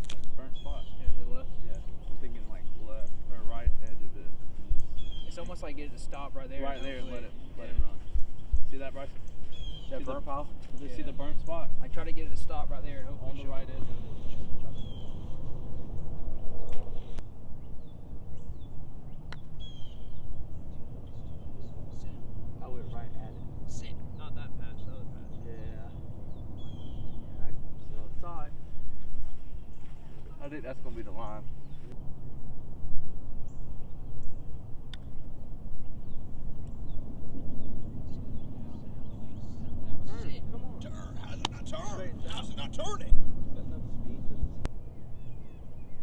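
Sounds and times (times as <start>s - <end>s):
birds chirping: 0.0s - 46.0s
wind rumbling on microphone: 0.0s - 46.0s
faint bird chirps: 4.2s - 5.7s, 13.9s - 28.0s
golf club striking ball: 19.3s - 19.6s.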